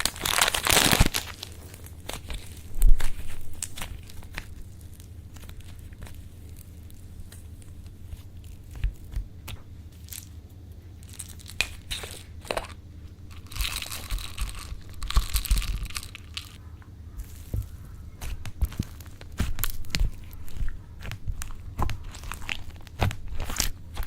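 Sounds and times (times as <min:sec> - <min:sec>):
slime crackling: 0:00.0 - 0:16.6, 0:17.2 - 0:24.0
slime clicking and popping: 0:18.2 - 0:24.0.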